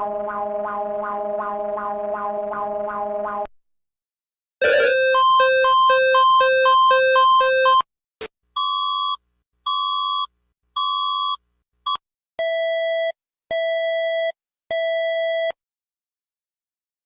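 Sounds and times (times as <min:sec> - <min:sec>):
warbling two-note alarm: 0:04.6 - 0:07.8.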